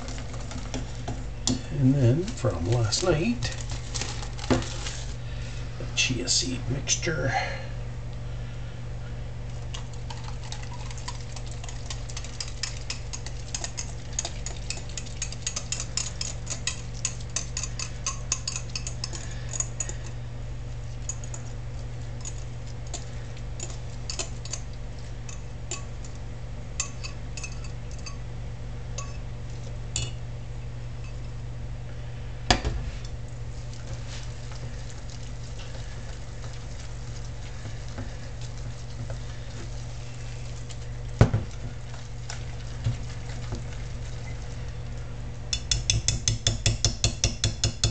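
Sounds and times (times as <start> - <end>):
stove hum: 0.0 - 47.9
whisk knocking bowl: 10.2 - 20.0, 45.5 - 47.9
whisk clicking against bowl: 10.8 - 20.0, 22.2 - 24.7, 45.5 - 47.9.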